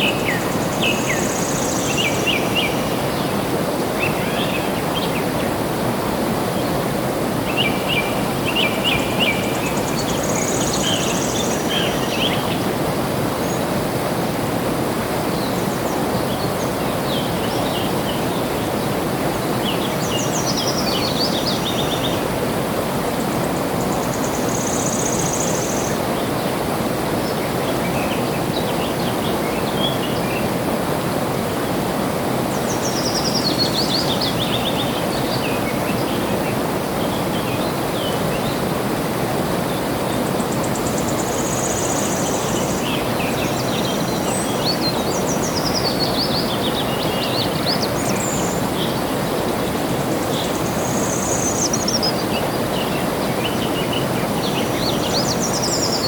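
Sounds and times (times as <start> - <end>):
birds singing: 0.0 - 5.6, 7.5 - 12.8, 32.5 - 38.7, 39.6 - 56.0.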